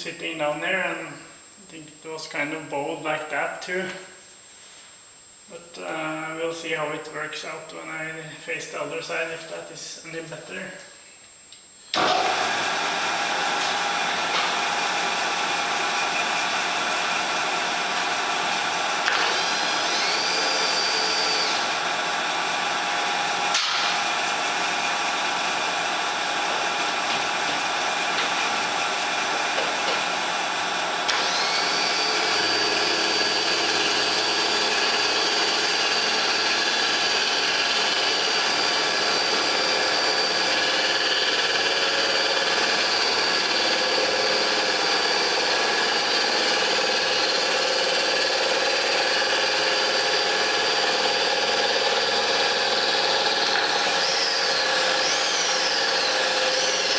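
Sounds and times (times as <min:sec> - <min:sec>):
milling machine running: 0:11.9 - 0:56.9.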